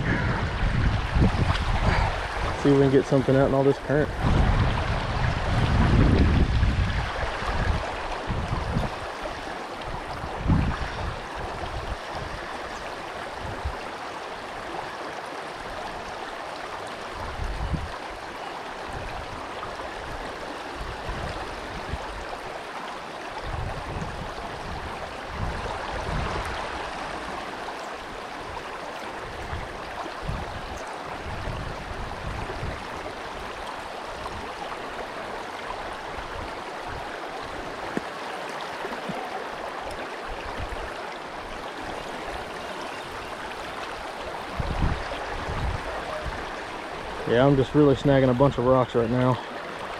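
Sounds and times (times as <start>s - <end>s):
wind rumble on microphone: 0.0s - 14.8s, 16.8s - 22.6s, 23.4s - 27.4s, 28.0s - 38.1s, 38.8s - 48.7s
creek water rushing: 0.0s - 49.9s.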